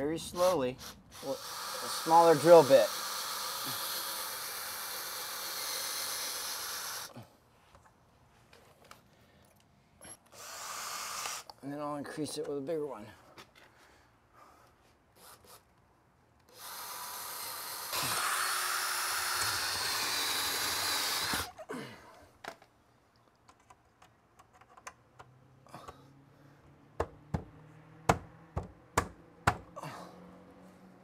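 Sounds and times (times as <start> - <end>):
power drill boring wood: 0.4 - 7.1, 16.5 - 21.6
sharp clicks and knocks: 22.4 - 25.4.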